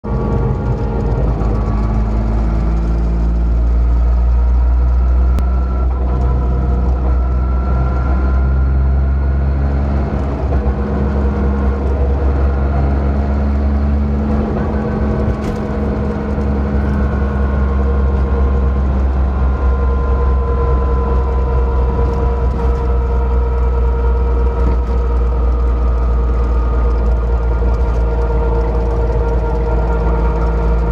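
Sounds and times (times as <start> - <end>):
car wheel metallic rumble: 10.0 - 30.9.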